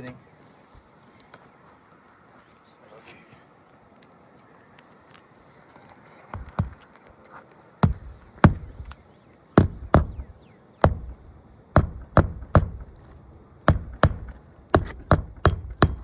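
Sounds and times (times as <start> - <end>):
hammer driving roofing nails: 6.3 - 6.8, 7.8 - 9.0, 9.6 - 11.2, 11.8 - 13.0, 13.7 - 16.0.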